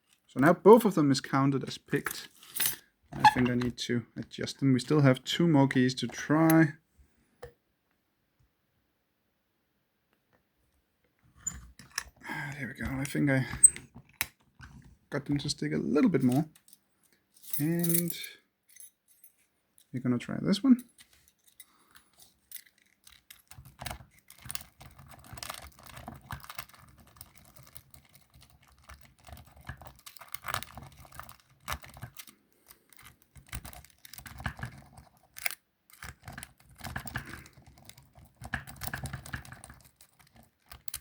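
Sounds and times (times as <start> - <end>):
key clicking and scraping in lock: 2.2 - 3.7, 11.4 - 12.2, 12.8 - 14.8, 20.8 - 41.0.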